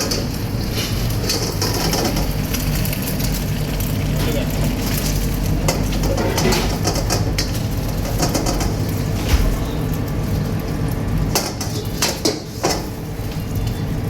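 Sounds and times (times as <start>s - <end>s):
low kitchen rumble: 0.0s - 14.0s
metal cookware clanks: 5.7s - 8.9s.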